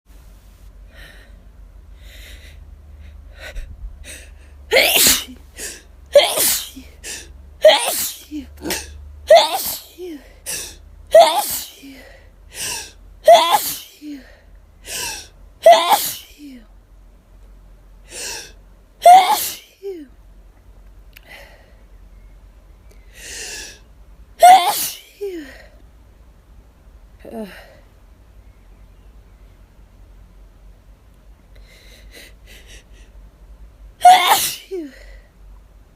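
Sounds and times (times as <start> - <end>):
person sneezing: 4.7 - 14.3, 14.9 - 16.4, 18.2 - 20.0, 24.4 - 25.6, 34.0 - 35.1.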